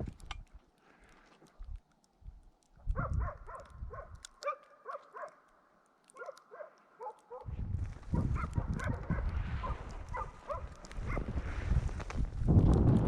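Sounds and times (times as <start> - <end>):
dogs barking: 2.9 - 5.5, 6.1 - 7.5, 8.1 - 11.3
low rumbling microphone noise: 7.5 - 13.0.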